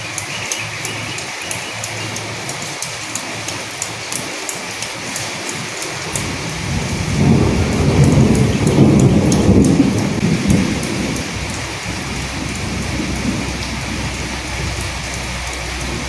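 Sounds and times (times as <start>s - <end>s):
rain hissing: 0.0s - 16.0s
raindrop ticks: 0.0s - 16.0s
low roll of thunder: 6.2s - 16.0s.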